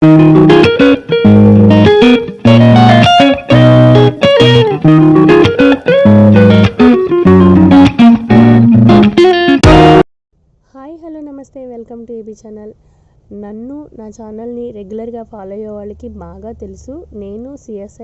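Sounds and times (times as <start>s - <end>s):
guitar-led intro music: 0.0s - 10.1s.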